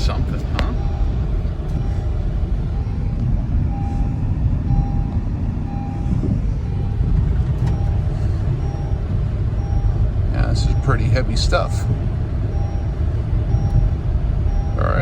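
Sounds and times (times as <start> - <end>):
short electronic beeps: 0.0 - 3.1, 3.7 - 7.0, 7.7 - 9.0, 12.5 - 15.0
loud low rumble: 0.0 - 15.0.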